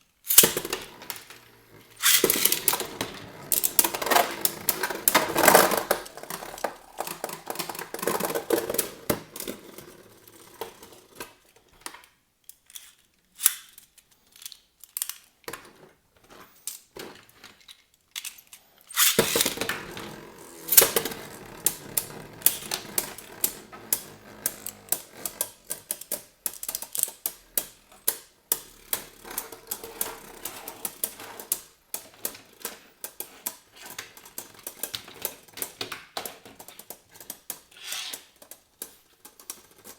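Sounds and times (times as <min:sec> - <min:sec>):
spinning tops clattering: 0:00.3 - 0:10.2, 0:18.9 - 0:31.8.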